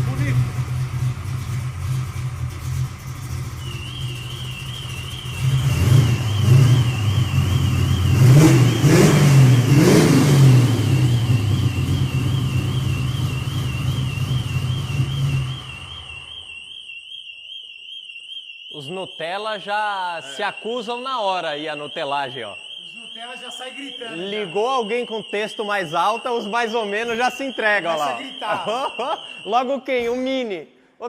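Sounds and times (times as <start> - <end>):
car engine idling and revving: 0.0 - 16.2
car alarm warbling: 0.0 - 30.4.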